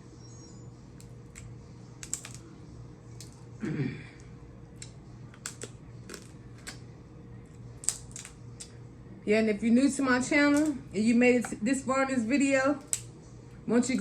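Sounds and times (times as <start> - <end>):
crab shells cracking: 1.0 - 2.5, 4.2 - 6.8, 7.8 - 8.8, 12.8 - 13.2.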